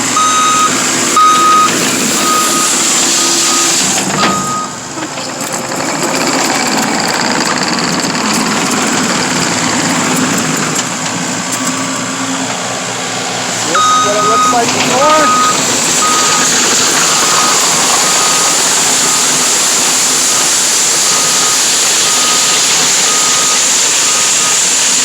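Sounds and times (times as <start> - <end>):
skid steer engine running: 0.0 - 25.0
backup alarm beeping: 0.2 - 4.8, 13.7 - 19.4.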